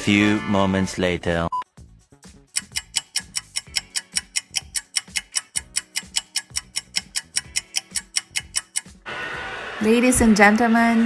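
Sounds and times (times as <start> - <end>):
faint background music: 0.0 - 9.1
clock ticking: 2.5 - 9.0.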